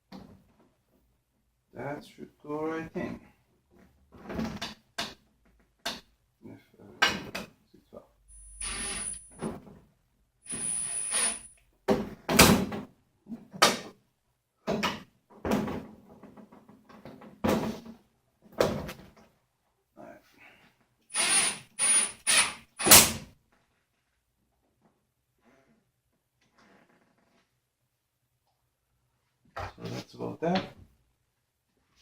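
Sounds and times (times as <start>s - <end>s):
small electric driver whirring: 21.2s - 23.0s.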